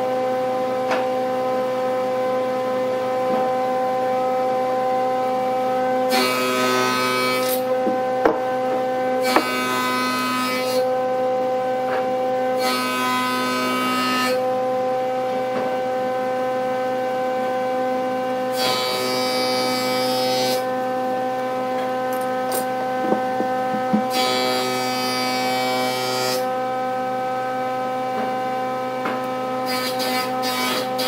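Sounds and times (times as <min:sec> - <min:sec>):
wood lathe motor hum: 0:00.0 - 0:16.2, 0:17.9 - 0:31.0
tool scraping spinning wood: 0:06.2 - 0:14.4, 0:28.0 - 0:31.0.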